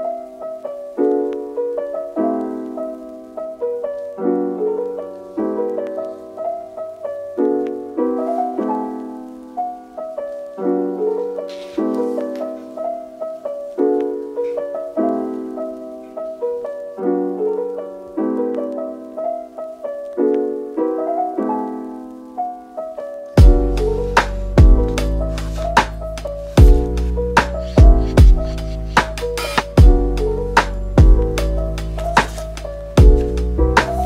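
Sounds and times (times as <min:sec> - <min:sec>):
gentle piano melody: 0:00.0 - 0:34.0
drum hits: 0:27.8 - 0:28.4, 0:29.5 - 0:30.0.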